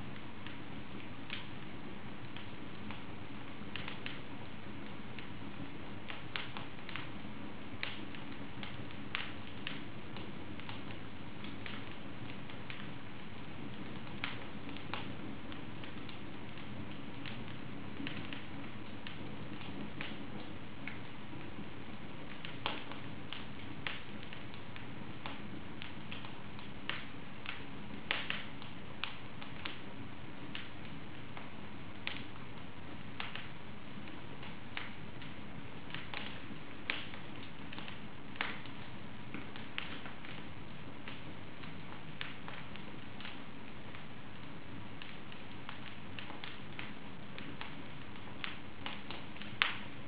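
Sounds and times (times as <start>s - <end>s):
wood fire crackling and popping: 0.0s - 50.0s.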